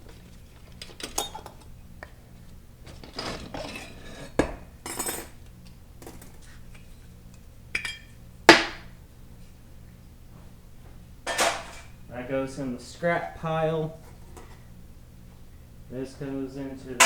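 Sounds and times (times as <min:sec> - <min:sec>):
metal parts clinking and clanking: 0:00.0 - 0:01.8, 0:02.8 - 0:05.4.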